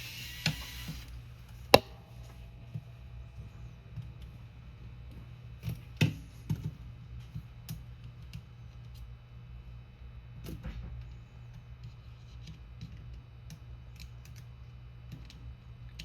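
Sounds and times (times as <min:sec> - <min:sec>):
steady low hum: 0:01.1 - 0:05.6.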